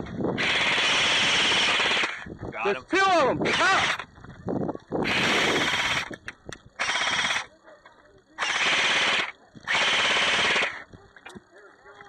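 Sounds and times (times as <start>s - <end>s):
airsoft gun firing full-auto: 0.4s - 2.2s, 6.8s - 7.4s, 8.4s - 10.8s.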